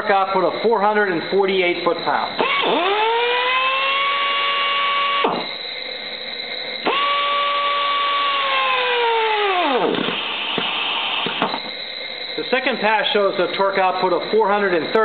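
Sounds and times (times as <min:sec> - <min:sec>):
pneumatic torque wrench whine: 0:01.0 - 0:15.0.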